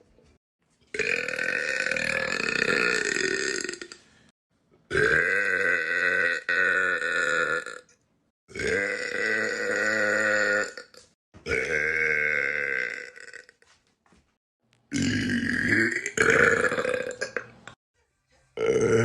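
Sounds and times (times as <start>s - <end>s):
person burping loudly: 0.9s - 4.0s, 4.9s - 7.9s, 8.5s - 13.6s, 14.9s - 17.8s, 18.6s - 19.0s.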